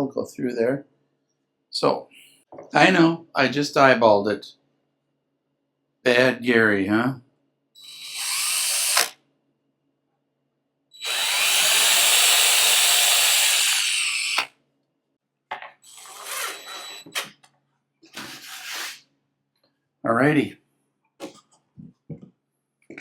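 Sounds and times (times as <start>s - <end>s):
power drill driving screws into wood: 7.8s - 9.2s, 11.0s - 14.5s, 15.8s - 17.3s.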